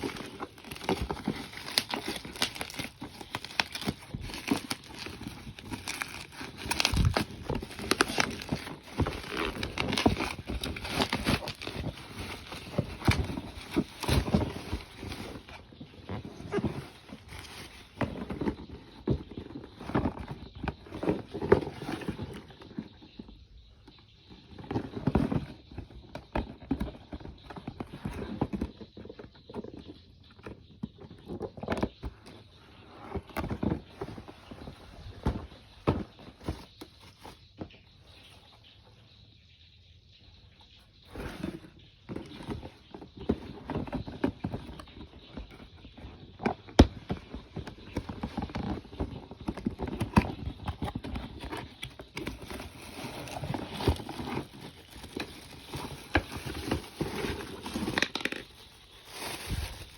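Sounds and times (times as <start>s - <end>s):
plastic and cardboard rustling: 0.0s - 38.8s, 40.8s - 59.9s.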